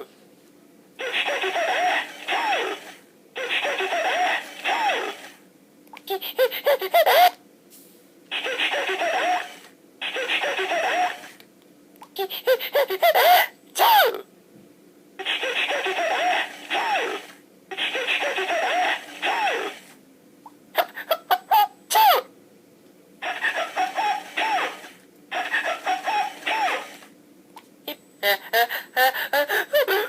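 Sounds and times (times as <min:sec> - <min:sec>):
person giggling: 0:01.0 - 0:02.5, 0:03.4 - 0:05.0, 0:06.1 - 0:07.4, 0:08.3 - 0:09.5, 0:10.1 - 0:11.2, 0:12.2 - 0:14.2, 0:15.2 - 0:17.0, 0:17.7 - 0:19.6, 0:20.8 - 0:22.3, 0:23.2 - 0:24.7, 0:25.3 - 0:26.8, 0:27.9 - 0:30.0
toy replaying pitched-up giggles: 0:01.0 - 0:05.2, 0:06.1 - 0:07.4, 0:08.3 - 0:11.4, 0:12.2 - 0:14.1, 0:15.2 - 0:19.8, 0:20.8 - 0:22.3, 0:23.2 - 0:27.0, 0:27.9 - 0:30.0.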